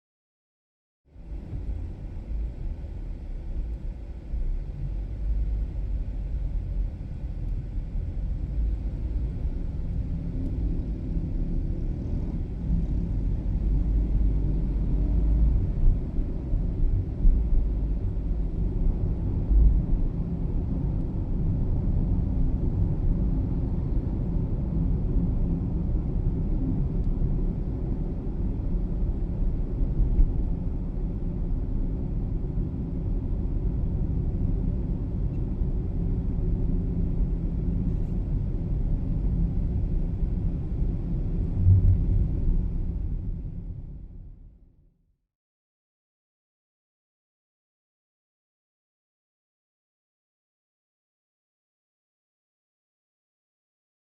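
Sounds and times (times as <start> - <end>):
car driving road and engine noise: 1.1 - 44.4.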